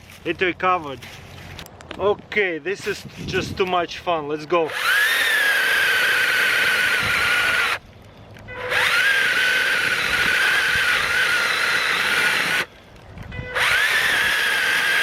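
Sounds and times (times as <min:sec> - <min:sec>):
electric chainsaw whining: 0:04.6 - 0:07.8, 0:08.6 - 0:12.8, 0:13.5 - 0:15.0.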